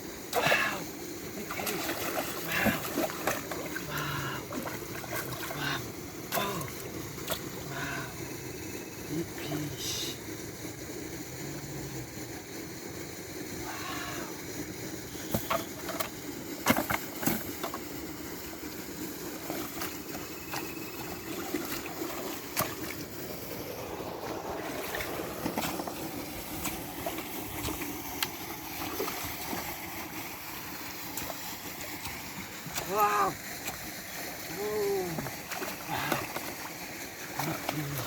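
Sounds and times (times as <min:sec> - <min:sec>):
water sloshing and splashing: 0:00.2 - 0:11.0, 0:13.5 - 0:38.0
sharp splashes: 0:01.4 - 0:08.1, 0:19.4 - 0:23.2, 0:23.8 - 0:38.0.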